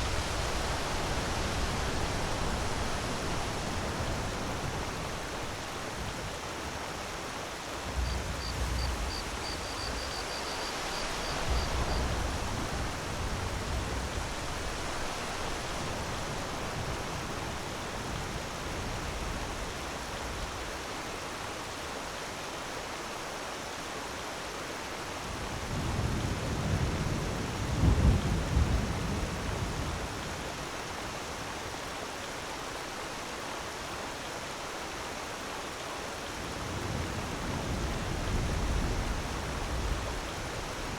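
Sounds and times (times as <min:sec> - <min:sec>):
waterfall rushing: 0:00.0 - 0:18.1
deep rumbles: 0:07.8 - 0:10.2.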